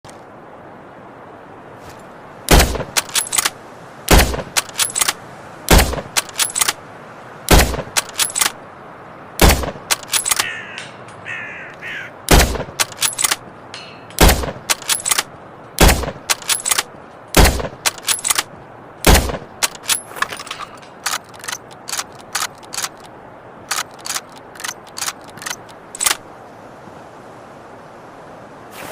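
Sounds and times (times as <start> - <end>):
suppressed rifle shots: 14.2 - 15.2.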